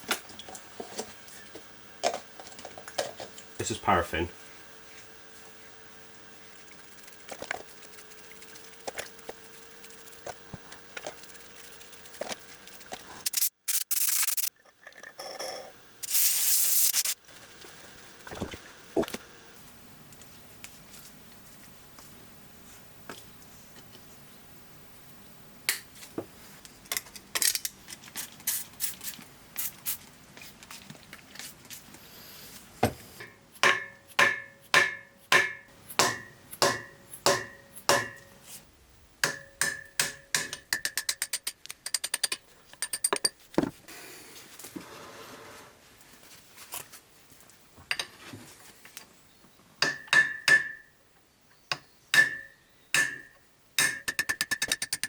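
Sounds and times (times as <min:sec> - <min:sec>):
hammer striking metal: 0:33.2 - 0:38.4, 0:39.2 - 0:41.4, 0:49.8 - 0:50.8, 0:52.1 - 0:54.6.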